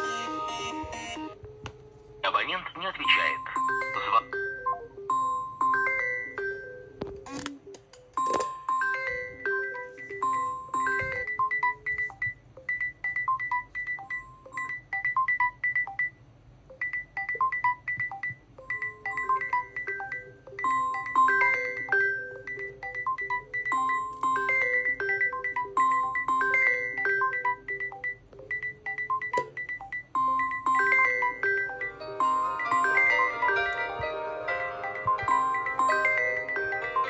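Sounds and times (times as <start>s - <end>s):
phone ring tones: 0.0s - 1.4s, 2.9s - 7.5s, 16.7s - 37.0s.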